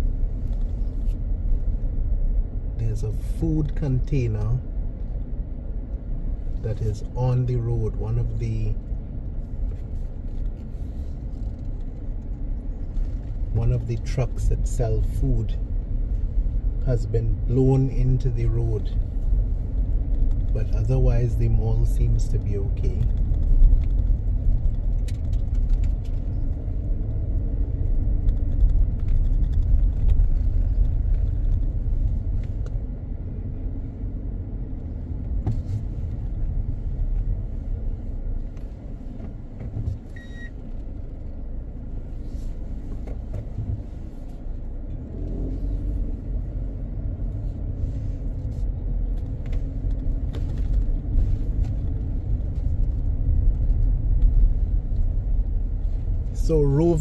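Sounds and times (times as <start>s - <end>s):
car road and engine rumble: 0.0s - 57.0s
faint beep: 40.2s - 40.6s.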